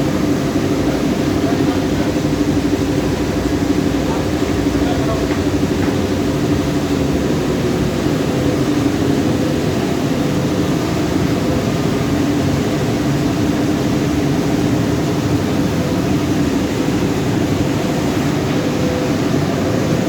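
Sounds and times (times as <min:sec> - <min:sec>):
washing machine running: 0:00.0 - 0:20.0.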